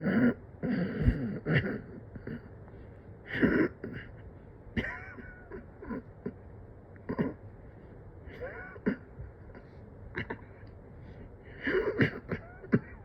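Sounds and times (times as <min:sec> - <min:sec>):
person coughing: 0:00.0 - 0:02.5, 0:03.3 - 0:04.1, 0:04.8 - 0:06.4, 0:07.0 - 0:07.4, 0:08.3 - 0:10.7, 0:11.6 - 0:13.0.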